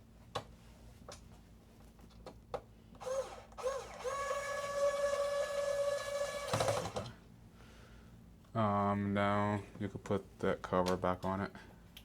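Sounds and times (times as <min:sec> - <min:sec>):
electric screwdriver motor whirring: 0:03.0 - 0:07.1.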